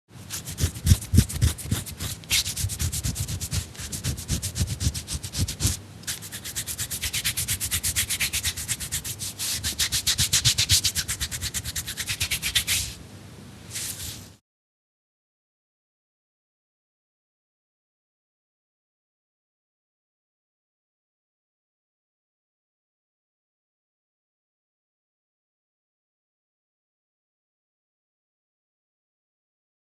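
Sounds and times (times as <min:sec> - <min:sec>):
person scratching skin: 0:00.3 - 0:13.0, 0:13.7 - 0:14.3.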